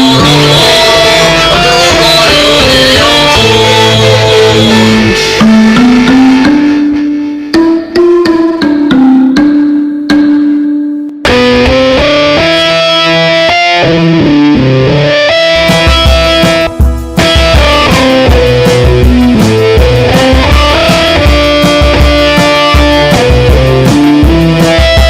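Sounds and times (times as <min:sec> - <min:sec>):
band backing with percussion: 0:00.0 - 0:08.2, 0:15.4 - 0:25.0
instrumental melody: 0:00.0 - 0:25.0.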